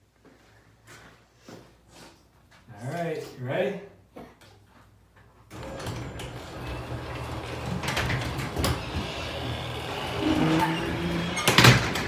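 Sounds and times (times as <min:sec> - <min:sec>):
door rattling and clicking on track: 0:05.5 - 0:12.0
garage door opener humming: 0:05.5 - 0:12.0.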